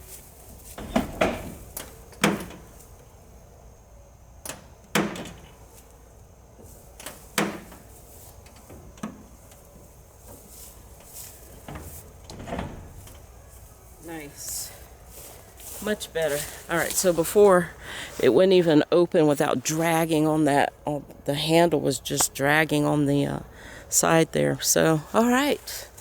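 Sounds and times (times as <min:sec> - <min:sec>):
metal shed door opening and shutting: 0:00.3 - 0:14.3
door knocks and latch clicks: 0:00.8 - 0:02.7, 0:04.4 - 0:05.6, 0:11.7 - 0:13.2.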